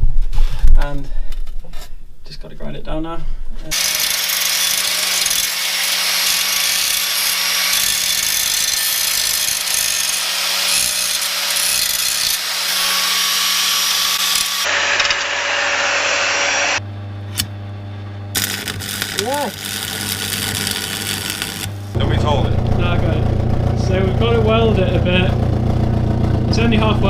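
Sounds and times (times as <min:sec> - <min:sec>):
grinder grinding steel: 0:03.7 - 0:16.8, 0:18.4 - 0:25.3
low hum: 0:14.7 - 0:27.0.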